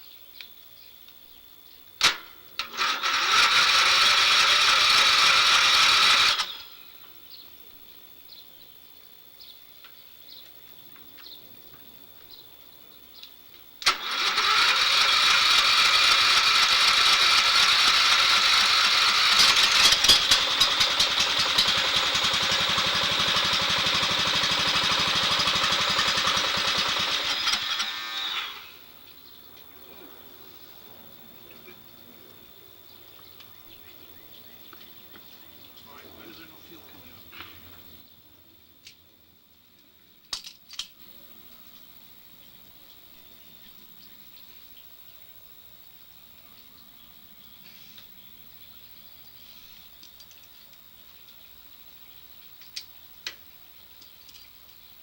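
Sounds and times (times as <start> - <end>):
electric starter cranking engine: 2.0 - 6.8, 13.8 - 29.0.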